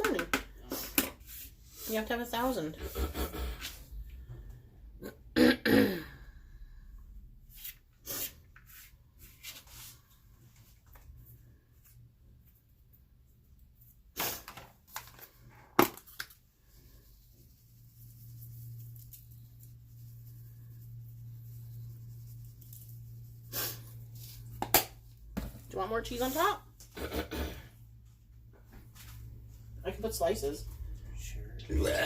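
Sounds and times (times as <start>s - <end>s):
person coughing: 5.0s - 6.2s, 26.9s - 27.7s, 31.7s - 32.0s.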